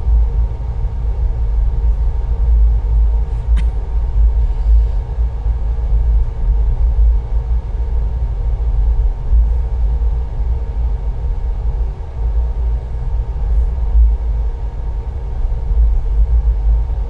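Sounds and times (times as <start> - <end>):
sharp click: 3.4 - 3.8.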